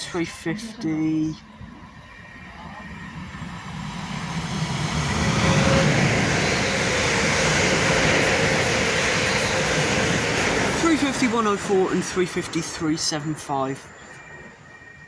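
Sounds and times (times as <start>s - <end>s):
train passing at speed: 0.0s - 15.0s
faint steady tone: 10.8s - 15.0s.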